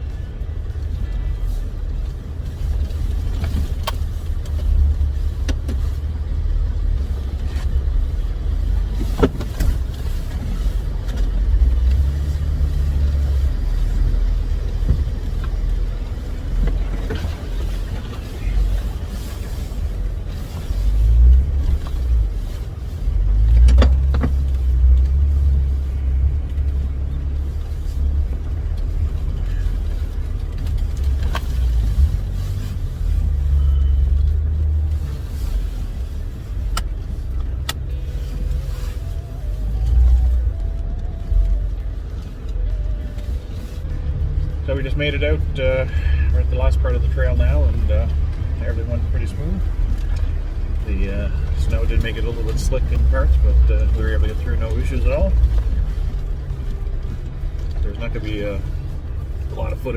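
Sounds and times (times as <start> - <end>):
vehicle engine drone: 0.0 - 59.9.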